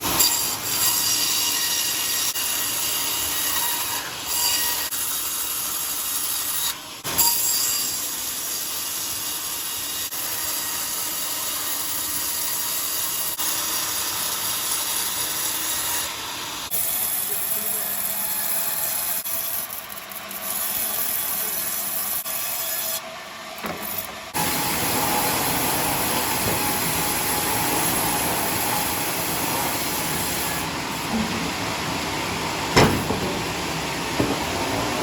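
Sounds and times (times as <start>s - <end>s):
band saw blade cutting log: 23.6s - 31.5s.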